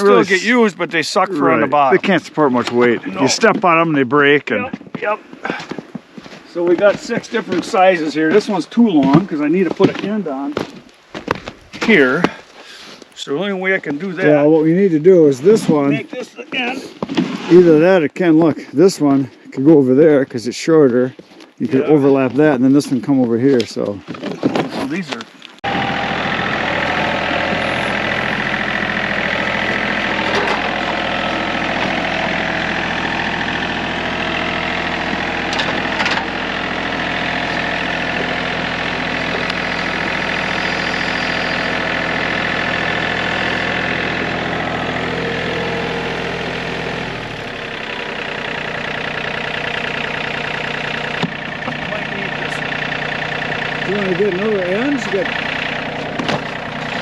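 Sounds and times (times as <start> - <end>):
engine idling: 25.6 - 57.0.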